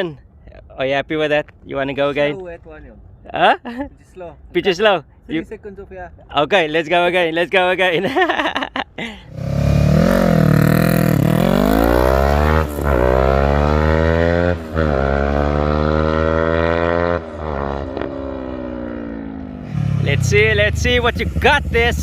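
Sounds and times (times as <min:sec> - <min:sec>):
motorcycle engine revving and accelerating: 0:09.3 - 0:22.0.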